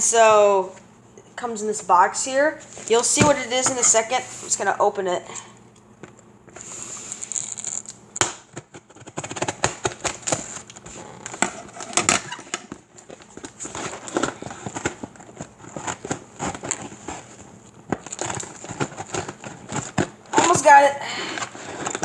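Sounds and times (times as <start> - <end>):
packing tape tearing: 6.6 - 20.5.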